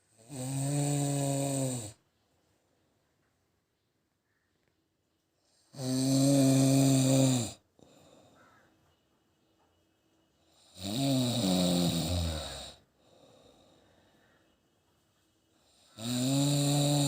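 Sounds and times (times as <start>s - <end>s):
loud rasping snores: 0.1s - 2.0s, 5.7s - 7.6s, 10.5s - 12.8s, 15.7s - 17.0s
soft breath: 7.8s - 9.0s, 12.3s - 15.9s.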